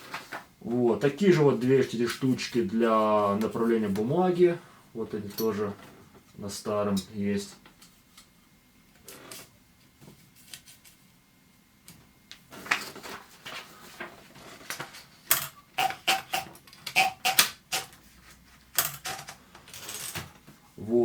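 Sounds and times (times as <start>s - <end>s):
manual typewriter clicking: 15.3s - 18.0s.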